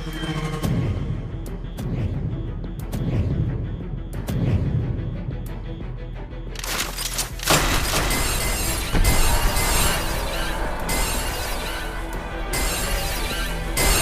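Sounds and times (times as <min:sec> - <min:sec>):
soundtrack music: 0:00.0 - 0:14.0
shattering crash: 0:06.6 - 0:10.6.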